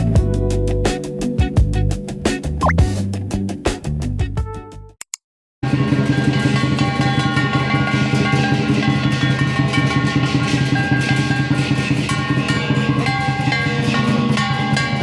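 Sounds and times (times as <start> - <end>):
background music with steady beat: 0.0 - 4.8.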